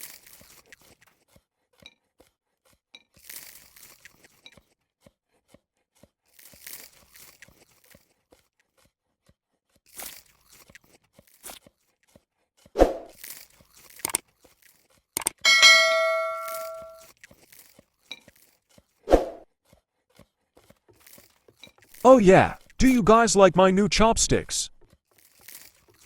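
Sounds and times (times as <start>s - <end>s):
dish struck and ringing: 15.4s - 17.0s.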